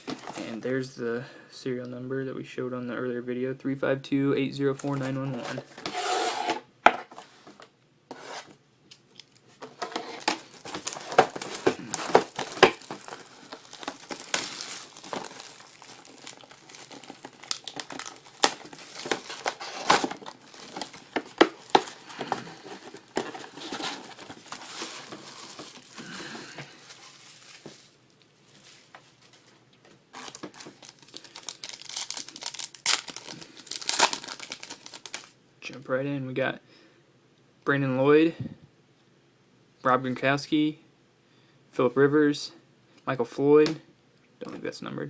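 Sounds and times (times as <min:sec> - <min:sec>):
plastic packaging crinkling and tearing: 0:00.0 - 0:00.6, 0:09.2 - 0:35.4.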